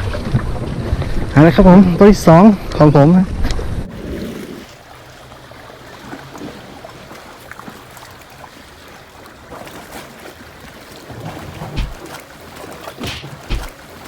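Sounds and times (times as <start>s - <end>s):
small waves lapping: 3.8s - 14.0s.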